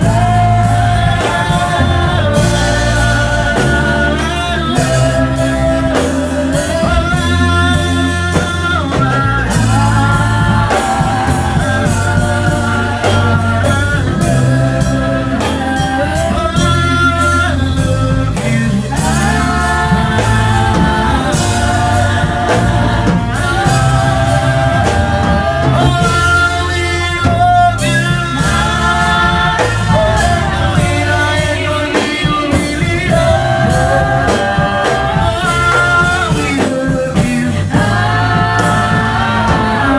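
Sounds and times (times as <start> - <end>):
bass guitar: 0.0 - 39.9
drums: 0.0 - 39.9
person singing: 0.0 - 39.9.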